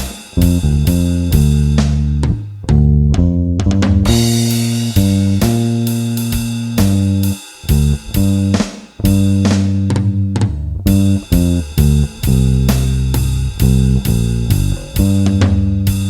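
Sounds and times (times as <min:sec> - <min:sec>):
drum kit: 0:00.0 - 0:16.0
electric bass line: 0:00.0 - 0:16.0.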